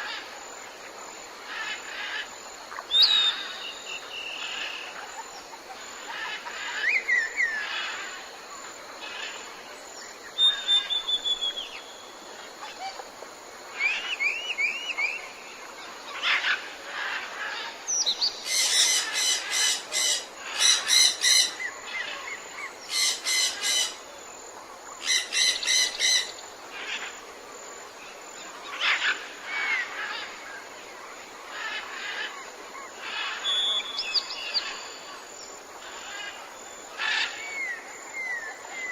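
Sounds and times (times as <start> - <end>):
steady background hiss: 0.0 - 38.9
birds chirping and whistling: 10.4 - 11.9.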